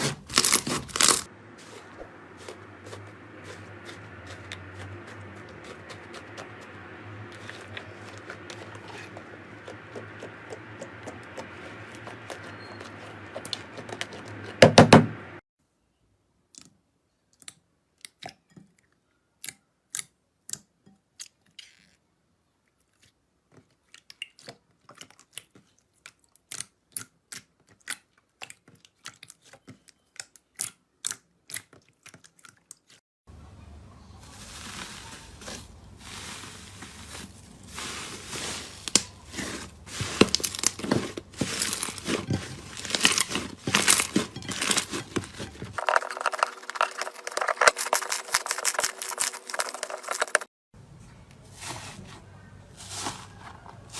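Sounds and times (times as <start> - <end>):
low steady hum: 0.1 - 15.4.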